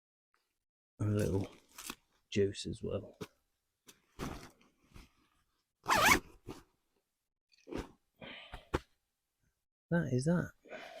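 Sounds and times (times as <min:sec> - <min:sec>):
zip pulled: 0:05.8 - 0:06.4.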